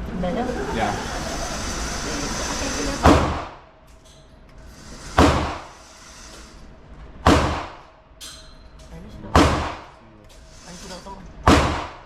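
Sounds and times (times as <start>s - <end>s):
gunshots echoing: 7.2s - 7.9s, 9.3s - 10.0s, 11.5s - 12.0s.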